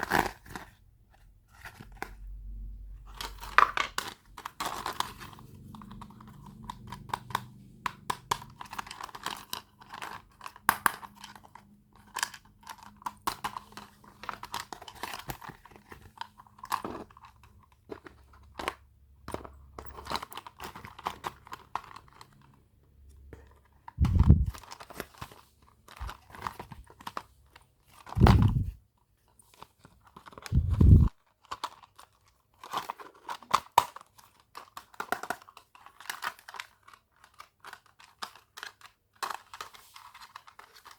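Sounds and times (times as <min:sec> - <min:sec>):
plastic packaging crinkling and tearing: 0:08.3 - 0:22.6, 0:29.4 - 0:40.9
deep bumps: 0:24.0 - 0:24.6, 0:28.2 - 0:28.8, 0:30.5 - 0:31.1.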